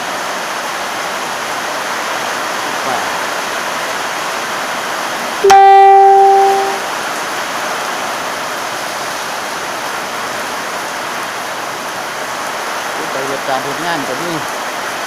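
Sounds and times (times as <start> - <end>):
heavy rain: 0.0 - 15.0
loud pitched tone: 5.4 - 6.8.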